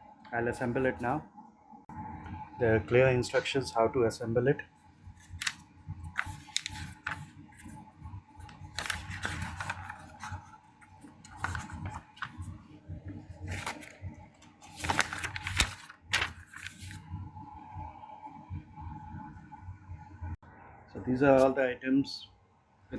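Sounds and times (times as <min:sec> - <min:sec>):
packaging rustling: 0:05.2 - 0:07.7, 0:08.4 - 0:12.6, 0:13.4 - 0:17.0.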